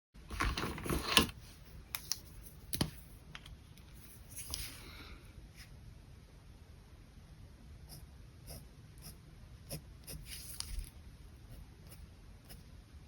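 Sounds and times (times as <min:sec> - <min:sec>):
pen scratching on paper: 0:07.9 - 0:10.9.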